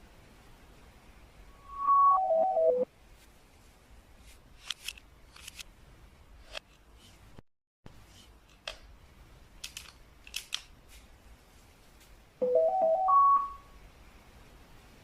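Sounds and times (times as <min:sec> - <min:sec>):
rising electronic beeps: 0:01.5 - 0:02.9, 0:12.4 - 0:13.7.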